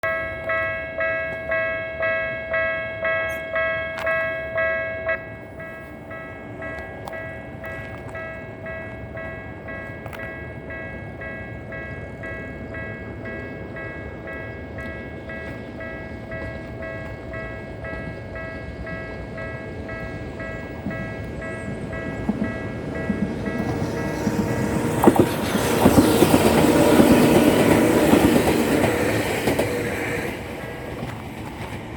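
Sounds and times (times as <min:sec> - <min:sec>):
level crossing warning bell ringing: 0:00.0 - 0:31.1
train rumble: 0:00.0 - 0:31.9.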